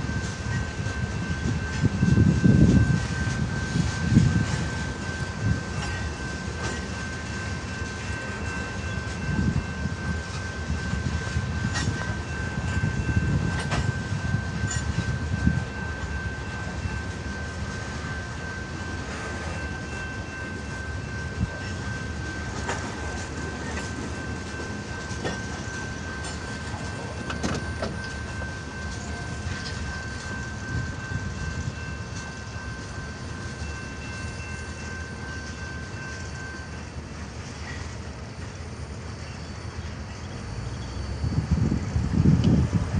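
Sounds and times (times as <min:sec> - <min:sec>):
freight train rumble: 0:00.0 - 0:42.9
wheel clicks over rail joints: 0:26.2 - 0:29.8.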